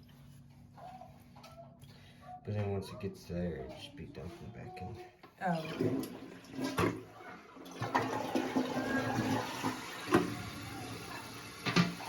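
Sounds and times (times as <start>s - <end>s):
toilet tank refilling: 5.5s - 12.0s.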